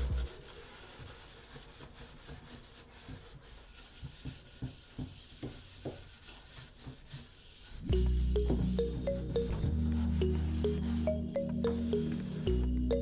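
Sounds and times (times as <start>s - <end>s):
scrubbing plastic by hand: 0.0s - 12.8s.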